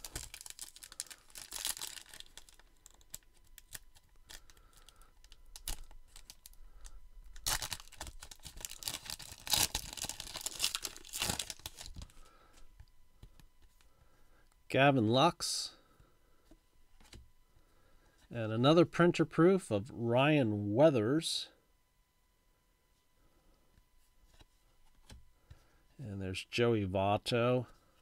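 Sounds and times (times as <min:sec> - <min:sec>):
wrapper tearing and crinkling: 0:00.0 - 0:12.1.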